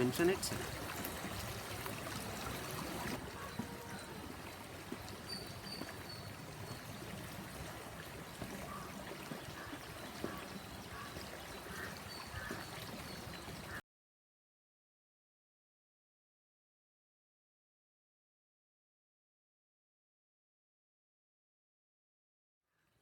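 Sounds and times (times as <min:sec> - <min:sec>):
flowing water rushing: 0:00.0 - 0:13.8.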